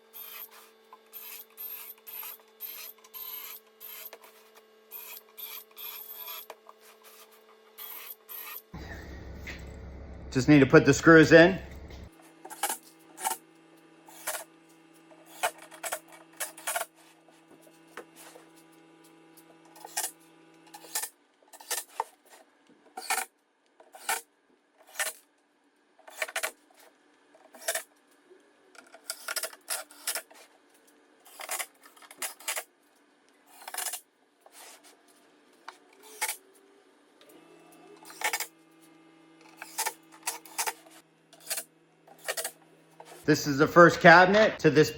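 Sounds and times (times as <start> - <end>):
low steady hum: 8.8 - 12.1.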